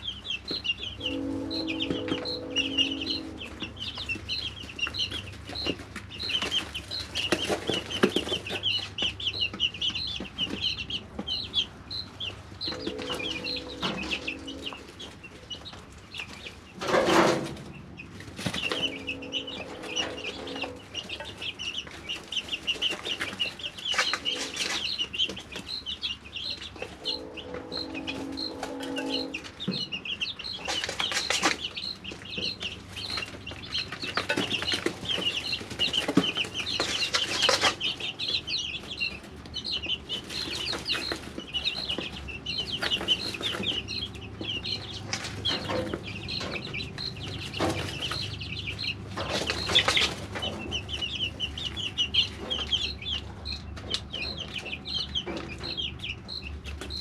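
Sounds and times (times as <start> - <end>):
chicks peeping: 0.0 - 57.0
low hum: 0.8 - 4.6, 12.2 - 15.2, 17.6 - 21.2, 26.8 - 30.3.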